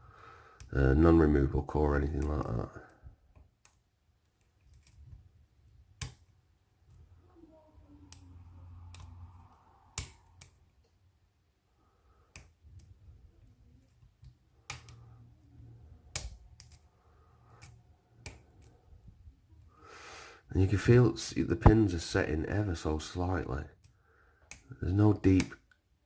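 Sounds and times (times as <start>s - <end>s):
lock pick clicking in padlock: 16.1s - 16.8s.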